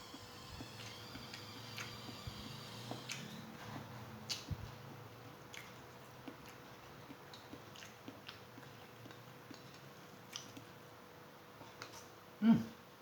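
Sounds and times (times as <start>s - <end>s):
faint chewing: 2.9s - 10.8s, 11.6s - 12.2s
mouth clicks and smacks: 4.3s - 4.7s, 5.5s - 10.7s.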